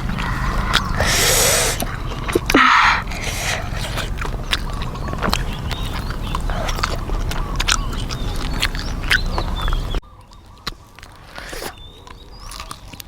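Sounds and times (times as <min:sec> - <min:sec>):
steady low hum: 0:00.0 - 0:07.6
person chewing and lip-smacking: 0:00.0 - 0:09.3, 0:11.0 - 0:11.8
crunchy clicks of fried food: 0:04.1 - 0:11.2, 0:11.8 - 0:13.0.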